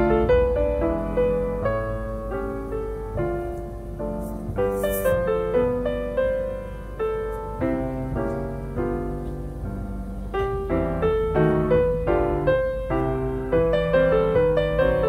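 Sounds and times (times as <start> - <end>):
gentle piano music: 0.0 - 15.0.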